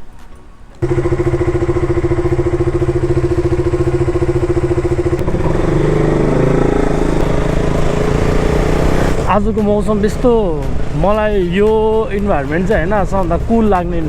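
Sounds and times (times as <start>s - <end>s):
motorcycle engine idling: 0.8s - 9.4s.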